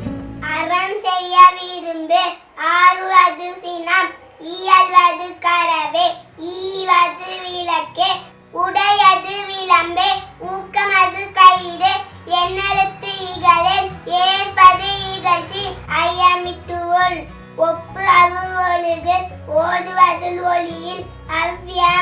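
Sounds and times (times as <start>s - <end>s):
backing track with bass line: 0.0s - 0.6s
child singing: 0.4s - 22.0s.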